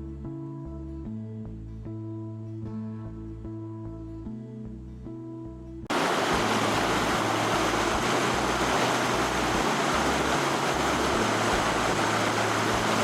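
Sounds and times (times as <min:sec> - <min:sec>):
rushing flowing water: 0:05.9 - 0:13.0.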